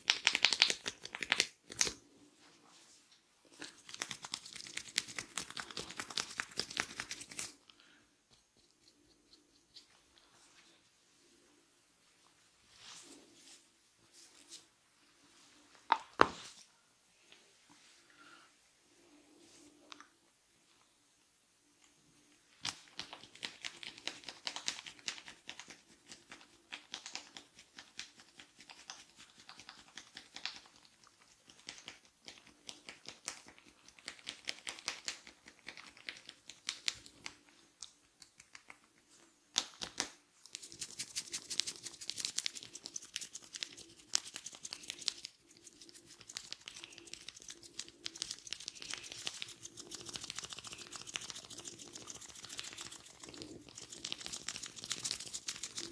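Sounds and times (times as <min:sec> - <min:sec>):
fingers scratching through hair: 0:03.6 - 0:07.6, 0:40.5 - 0:55.9.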